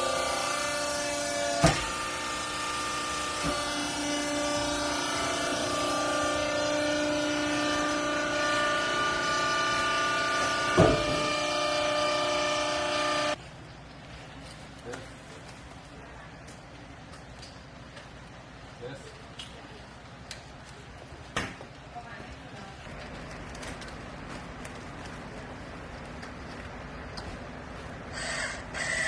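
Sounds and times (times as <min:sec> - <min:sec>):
hydraulic baler pump whine: 0:00.0 - 0:13.4.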